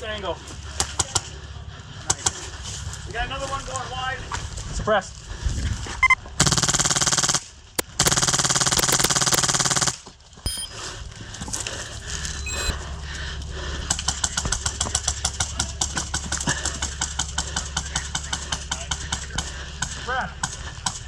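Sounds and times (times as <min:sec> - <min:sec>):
rapid clicking shots: 0:07.8 - 0:09.7.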